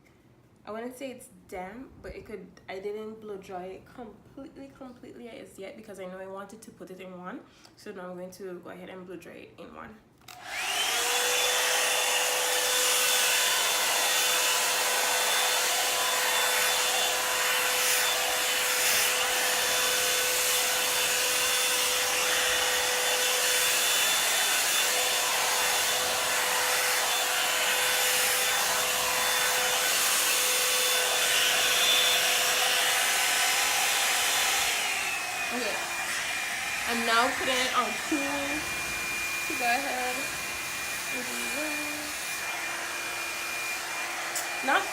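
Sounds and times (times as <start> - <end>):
hair dryer brush running: 10.3 - 44.9.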